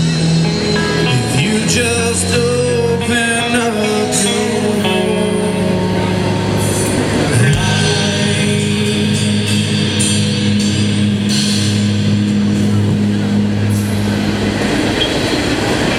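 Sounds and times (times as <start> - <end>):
amplified guitars holding a chord: 0.0 - 15.9
cymbals crashing: 8.3 - 15.8.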